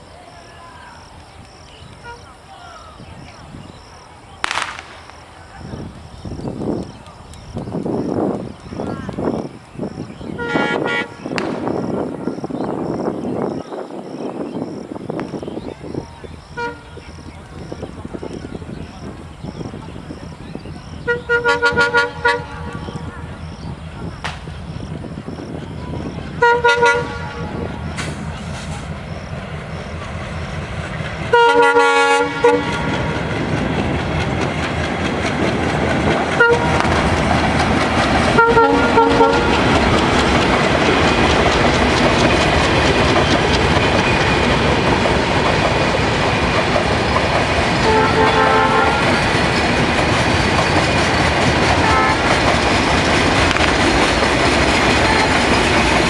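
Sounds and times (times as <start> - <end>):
train rumble and wheel clatter: 0.0 - 56.0
train horn blasts: 10.4 - 11.3, 16.6 - 17.0, 21.1 - 23.0, 26.4 - 27.7, 31.3 - 33.2, 36.4 - 36.9, 38.3 - 39.8, 47.8 - 49.2, 51.8 - 52.4.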